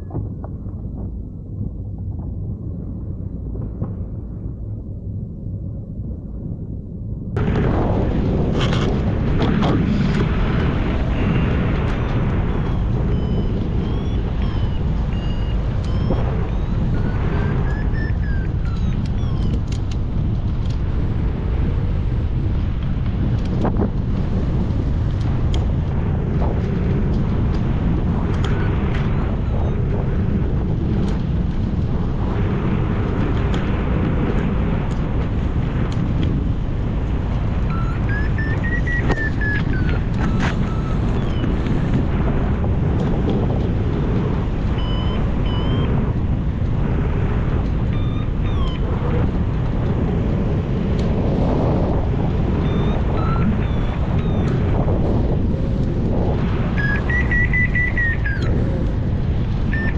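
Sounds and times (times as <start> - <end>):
wind buffeting microphone: 0.0 - 59.9
high electronic beeps: 11.2 - 19.9, 37.7 - 41.9, 44.8 - 45.9, 47.9 - 49.1, 52.6 - 54.7, 56.8 - 58.6.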